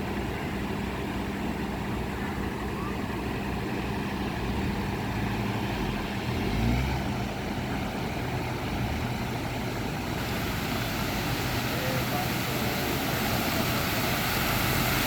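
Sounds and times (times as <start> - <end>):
vehicle engine running: 0.0 - 15.0
steady noise: 7.0 - 15.0.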